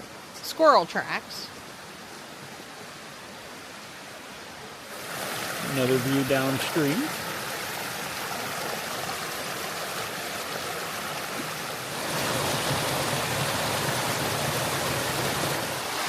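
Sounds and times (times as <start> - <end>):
stream flowing over rocks: 0.0 - 16.0.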